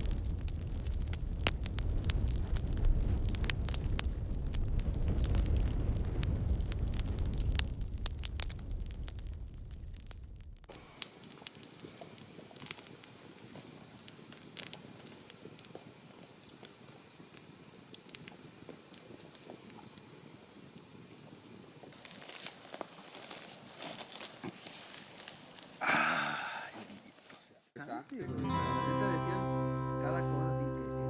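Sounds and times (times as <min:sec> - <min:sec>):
campfire crackling and popping: 0:00.0 - 0:27.4.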